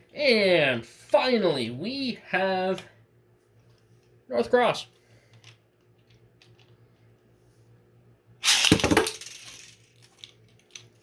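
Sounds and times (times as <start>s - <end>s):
spinning tops clattering in stadium: 8.4s - 11.0s.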